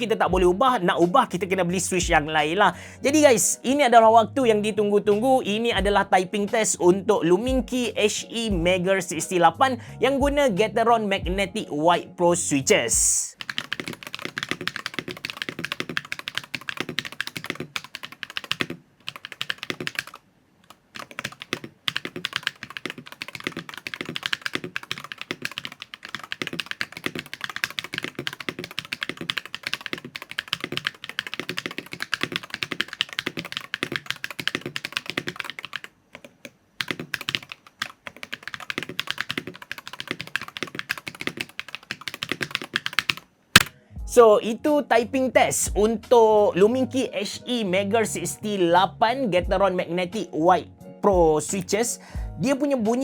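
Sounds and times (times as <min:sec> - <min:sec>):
fast typing on mechanical keyboard: 0:13.4 - 0:43.7.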